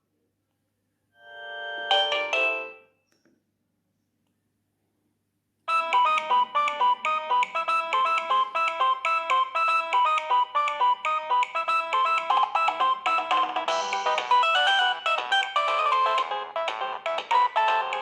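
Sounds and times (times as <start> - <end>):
mobile phone ringtone: 1.2 - 2.8, 5.7 - 18.0.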